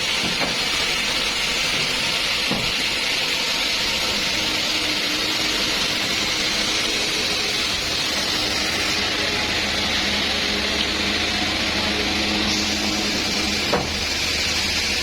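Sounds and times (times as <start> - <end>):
sawmill saw running: 0.0 - 15.0.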